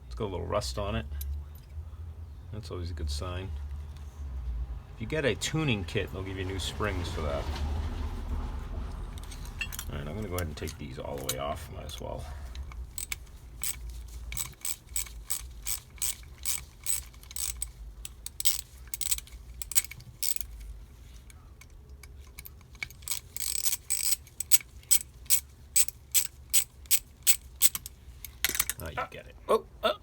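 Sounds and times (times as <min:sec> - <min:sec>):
hand ratchet clicking: 0:09.1 - 0:20.6, 0:21.2 - 0:28.9.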